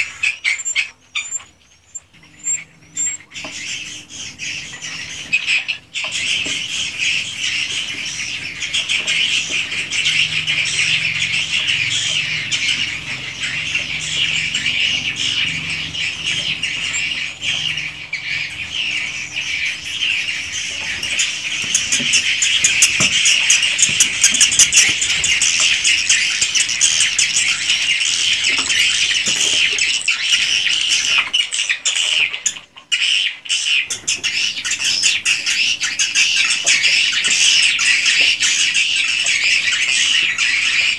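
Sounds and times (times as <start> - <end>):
swiftlets chirping and twittering: 0.0 - 40.9
rapid clicking: 20.8 - 30.1.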